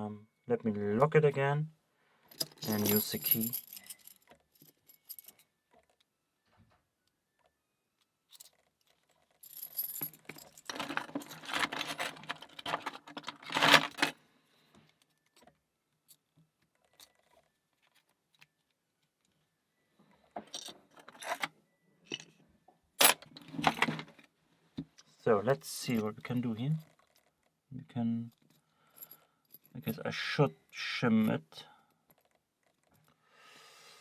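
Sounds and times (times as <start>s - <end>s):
keys jangling: 2.4s - 5.4s, 8.3s - 14.1s.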